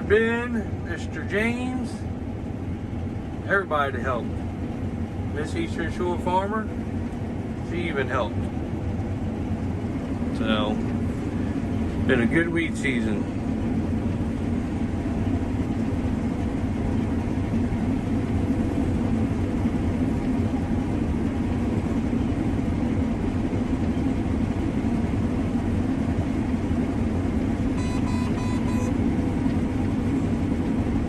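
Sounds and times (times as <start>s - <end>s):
combine harvester engine running: 0.0s - 31.0s
rapid electronic beeps: 27.8s - 29.0s.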